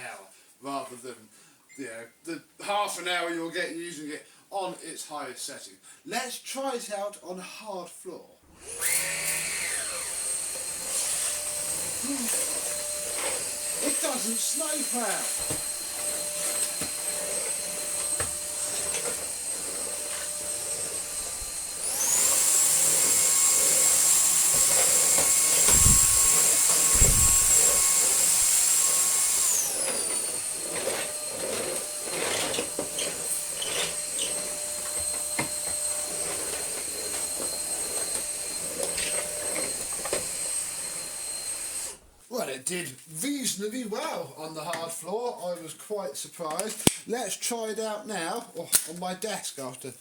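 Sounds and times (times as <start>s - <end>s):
stick vacuum motor whine: 8.5s - 42.2s.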